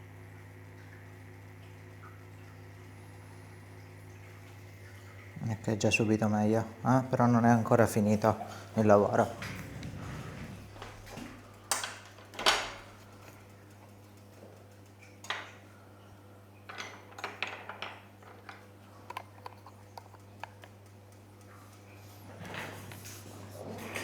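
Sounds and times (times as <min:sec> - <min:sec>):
steady low hum: 0:00.0 - 0:16.7.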